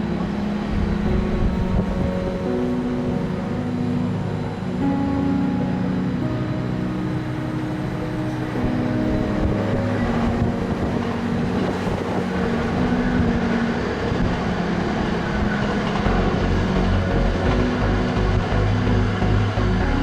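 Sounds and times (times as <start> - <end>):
wind noise on microphone: 0.0 - 3.5, 7.6 - 20.0
music with long held notes: 0.0 - 20.0.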